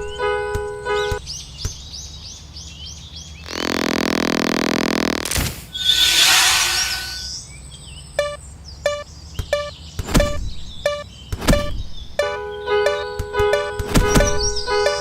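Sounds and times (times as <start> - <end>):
short noisy whoosh: 5.7 - 7.4
held tone: 5.8 - 7.4.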